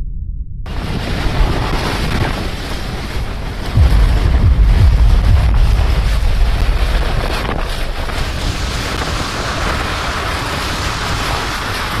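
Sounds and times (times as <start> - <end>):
heavy low rumble: 0.0 - 1.5, 3.6 - 10.7.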